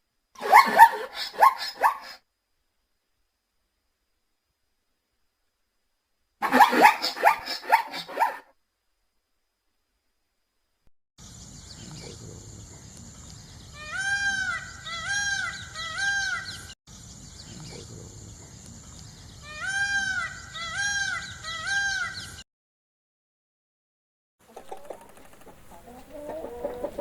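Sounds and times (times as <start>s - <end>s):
background hiss: 0.0s - 6.4s, 8.6s - 13.9s, 16.5s - 19.6s
animal calling: 0.4s - 2.2s, 6.4s - 8.5s.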